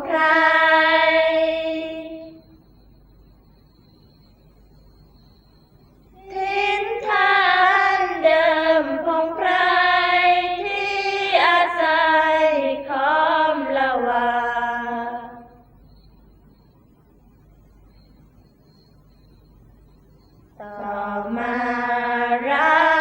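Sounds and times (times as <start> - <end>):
high voice singing devotional verse: 0.0 - 2.6, 6.2 - 15.7, 20.6 - 23.0.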